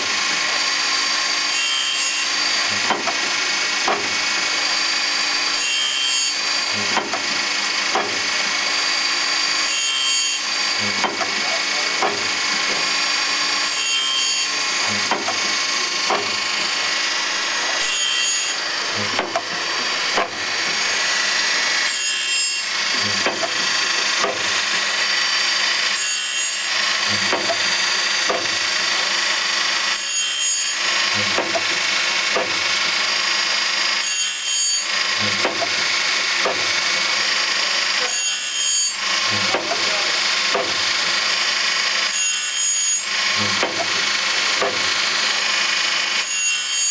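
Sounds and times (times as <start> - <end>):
machine grinding saw teeth: 0.0 - 46.9.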